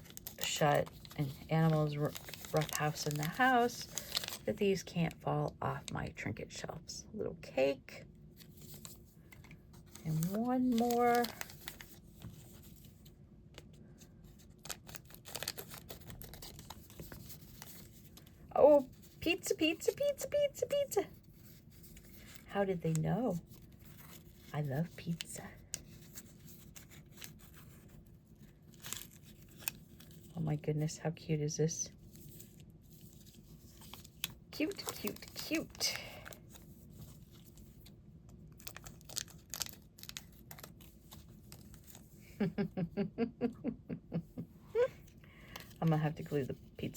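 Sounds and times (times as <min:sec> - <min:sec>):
packaging clicks and rustles: 0:00.0 - 0:05.2, 0:08.4 - 0:19.8, 0:21.5 - 0:30.4, 0:32.1 - 0:42.2.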